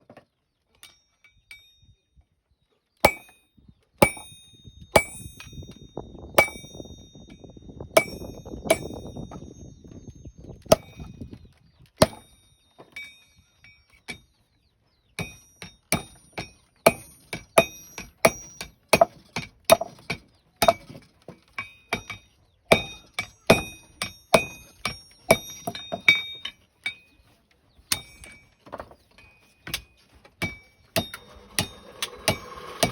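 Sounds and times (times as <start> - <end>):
hammer striking steel on anvil: 3.0 - 3.4, 4.0 - 5.8, 6.4 - 7.4, 8.0 - 9.4, 15.2 - 21.0, 21.6 - 27.1, 27.9 - 28.4, 29.6 - 32.9.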